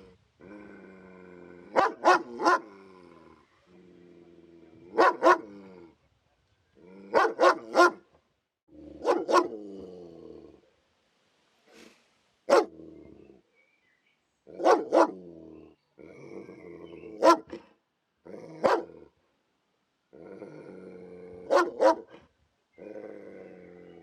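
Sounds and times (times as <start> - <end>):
dog growling: 0.0 - 6.0, 8.7 - 10.7, 15.0 - 17.4, 20.2 - 22.0, 22.8 - 24.0
dog barking aggressively: 1.7 - 2.7, 4.9 - 5.5, 7.1 - 8.0, 9.0 - 9.6, 12.5 - 12.7, 14.5 - 15.2, 17.2 - 17.6, 18.6 - 19.0, 21.5 - 22.2.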